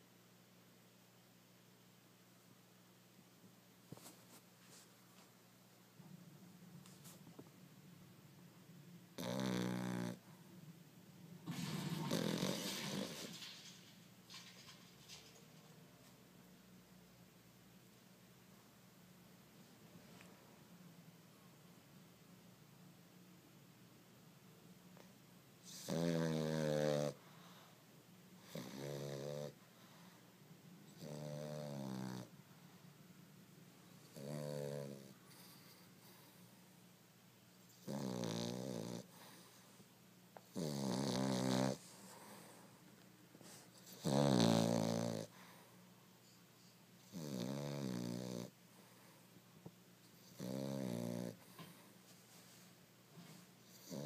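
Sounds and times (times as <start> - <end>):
dog snoring: 9.1 - 10.3, 11.5 - 13.3, 25.6 - 27.6, 28.4 - 29.6, 30.9 - 32.3, 34.0 - 36.4, 37.7 - 39.6, 40.4 - 42.7, 43.5 - 45.6, 47.0 - 49.2, 50.2 - 51.8, 53.6 - 54.0.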